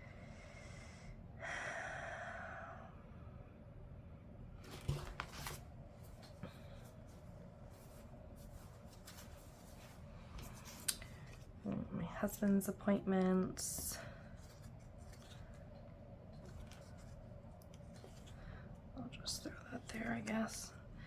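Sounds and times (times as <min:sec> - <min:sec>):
paper rustling: 0:04.6 - 0:06.3, 0:07.1 - 0:11.5, 0:14.4 - 0:15.7, 0:16.3 - 0:18.6.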